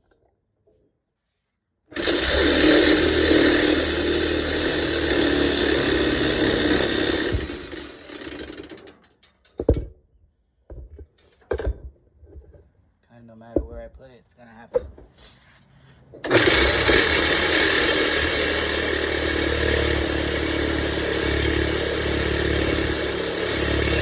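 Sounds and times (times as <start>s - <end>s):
power tool cutting metal: 1.9s - 9.0s, 16.2s - 24.0s.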